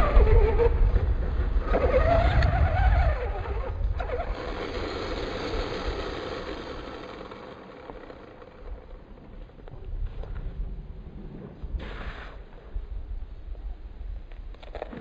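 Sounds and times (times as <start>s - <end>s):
electric motor whining: 0.0s - 9.0s
low rumble: 7.9s - 15.0s.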